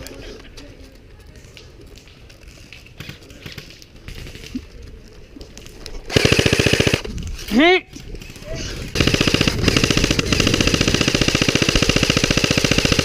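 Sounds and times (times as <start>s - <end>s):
airsoft gun full-auto burst: 6.1s - 7.1s, 8.9s - 13.0s.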